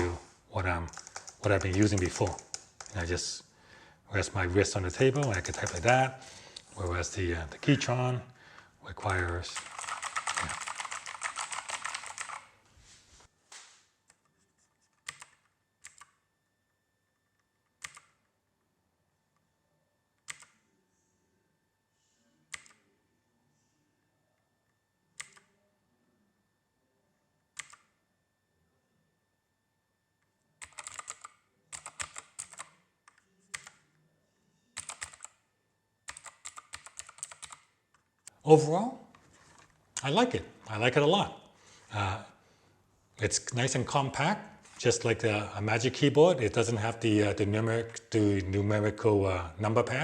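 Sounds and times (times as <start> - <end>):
mechanical keyboard typing: 0.8 - 3.2, 4.5 - 6.1, 9.0 - 12.5, 15.0 - 16.2, 17.8 - 18.2, 22.5 - 22.8, 27.6 - 27.9, 30.6 - 33.8, 34.8 - 35.4, 36.1 - 37.7
mechanical keyboard key clicks: 17.8 - 18.1, 22.5 - 22.8, 27.6 - 27.9, 30.6 - 33.8, 34.8 - 35.4, 36.1 - 37.6.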